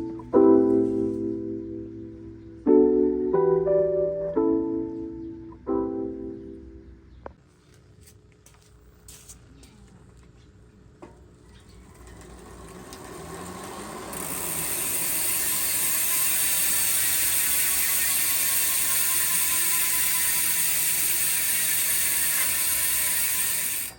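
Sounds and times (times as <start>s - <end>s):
bike freehub ratcheting: 11.8s - 23.9s.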